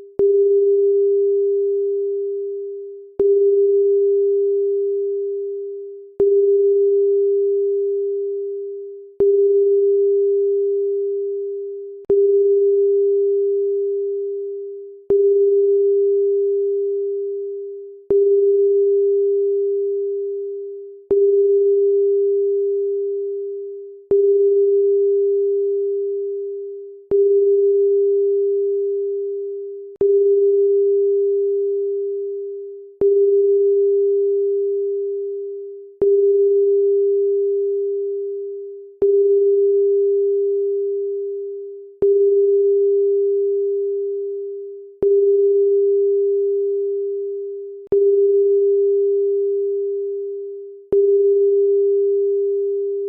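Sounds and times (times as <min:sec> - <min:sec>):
low electronic beep: 0:45.0 - 0:50.1, 0:50.9 - 0:52.6.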